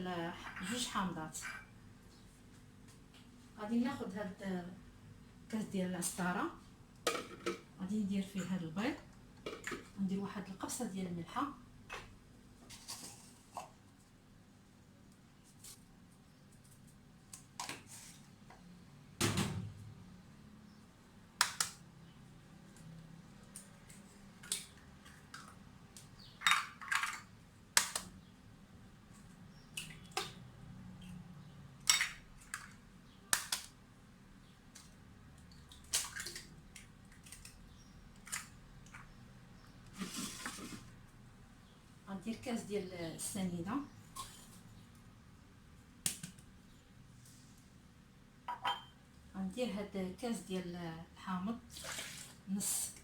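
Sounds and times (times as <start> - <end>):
eggs cracking and kitchenware clicks: 23.5 - 28.2.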